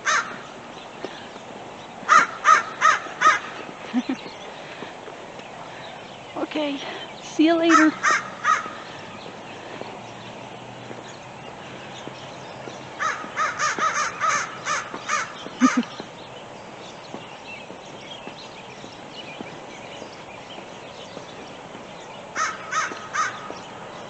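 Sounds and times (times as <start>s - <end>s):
crows cawing: 0.0s - 1.2s, 2.0s - 3.7s, 7.7s - 9.8s, 12.9s - 16.1s, 22.4s - 23.8s
distant high chirps: 0.0s - 24.0s.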